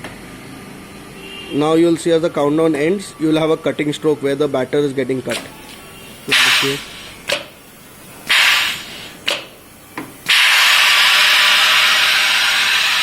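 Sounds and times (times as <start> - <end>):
machine clicks: 5.3 - 7.5, 8.3 - 9.6
wafer baking machine hissing: 5.3 - 13.0.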